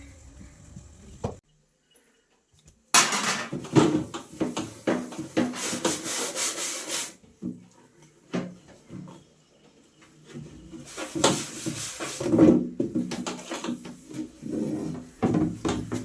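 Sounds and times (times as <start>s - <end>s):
scrubbing on a hard surface: 10.2s - 16.0s.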